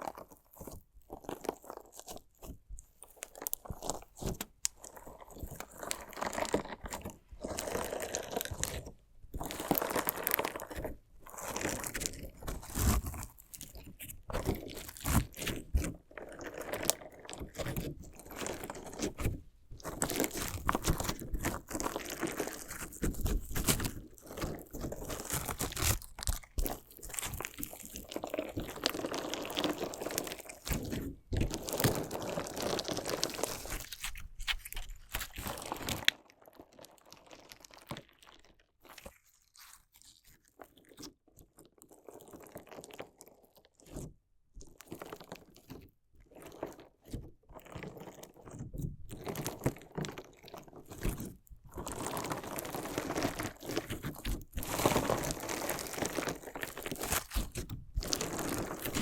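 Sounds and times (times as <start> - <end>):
slime crunching and crackling: 0.0 - 59.0.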